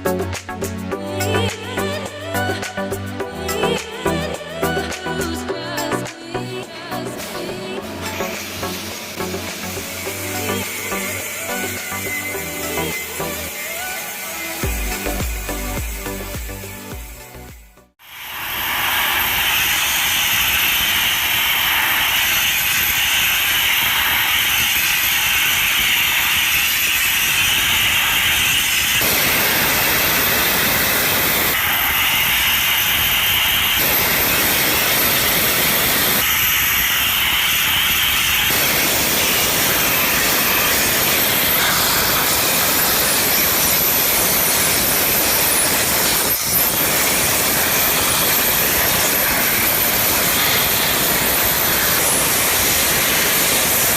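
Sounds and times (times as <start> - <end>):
loud hissing machine noise: 0.0 - 53.9.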